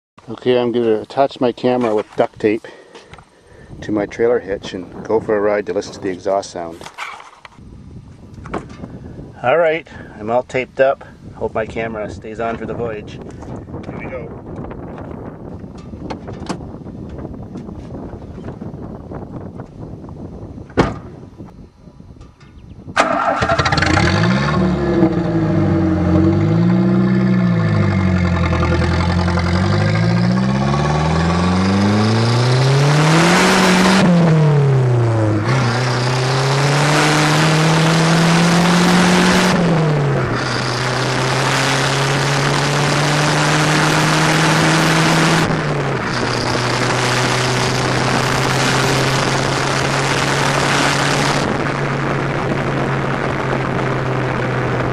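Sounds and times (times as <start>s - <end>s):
road and wind noise: 0.2s - 54.9s
thump: 20.7s - 21.2s
car engine accelerating: 23.0s - 54.9s.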